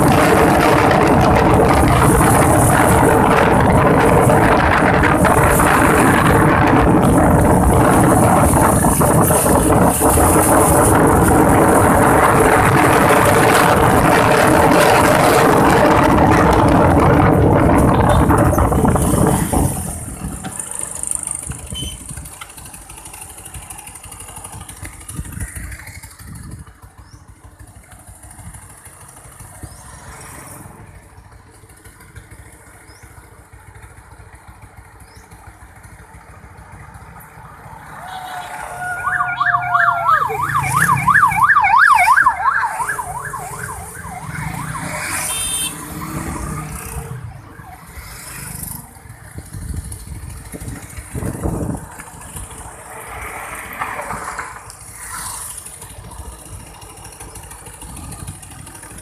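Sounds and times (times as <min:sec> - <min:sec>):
wind noise: 0:00.0 - 0:20.6, 0:49.3 - 0:52.2
vehicle road noise: 0:00.0 - 0:59.0
electronic siren wailing: 0:38.1 - 0:47.9.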